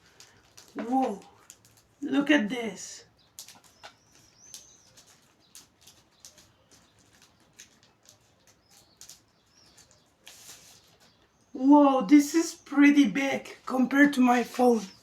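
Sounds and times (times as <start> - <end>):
phone packaging clicks and rustles: 0.0 - 2.0, 3.2 - 11.2.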